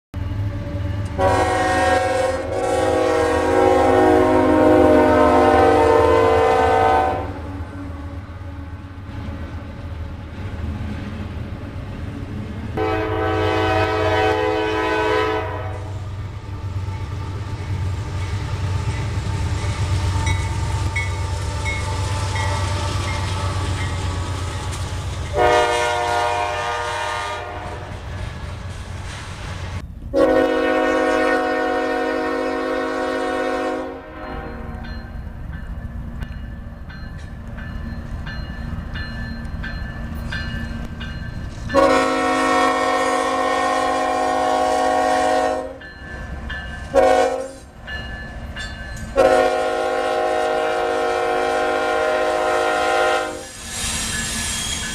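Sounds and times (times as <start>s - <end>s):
train rumbling past: 0.2s - 54.9s
locomotive air horn blasts: 1.1s - 8.7s, 12.8s - 16.1s, 25.3s - 28.0s, 30.1s - 34.8s, 41.7s - 45.8s, 46.9s - 47.8s, 49.1s - 53.6s.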